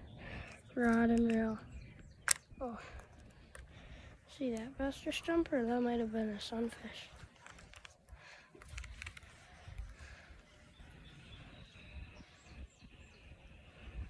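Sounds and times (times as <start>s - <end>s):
soft clicks: 0.5s - 3.7s.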